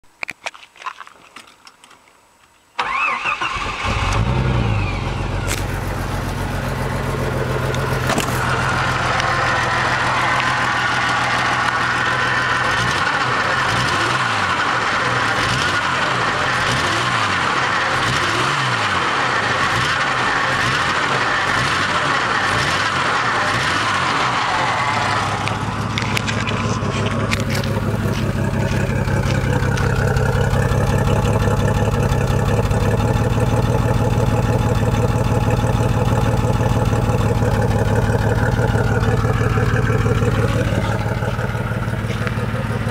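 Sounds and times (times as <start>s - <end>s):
car engine starting and running: 2.8s - 42.9s.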